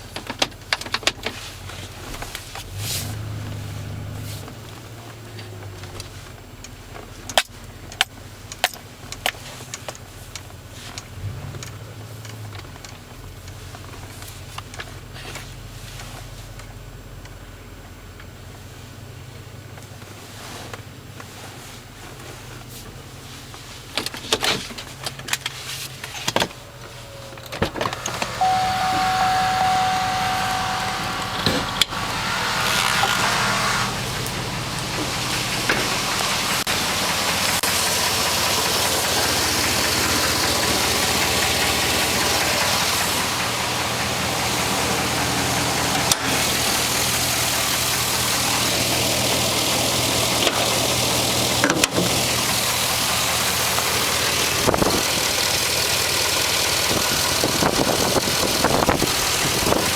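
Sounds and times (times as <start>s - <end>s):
car engine starting and idling: 0.0s - 59.9s
engine knocking: 23.0s - 59.9s
high whine: 27.9s - 36.8s.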